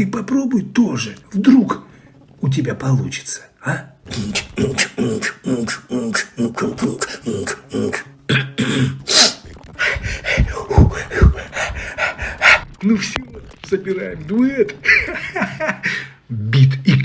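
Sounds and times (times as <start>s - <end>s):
beatboxing: 4.1s - 12.8s.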